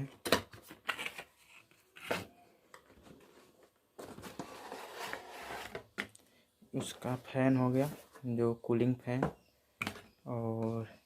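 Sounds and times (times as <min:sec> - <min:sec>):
cardboard and plastic rustling: 0:00.0 - 0:06.0.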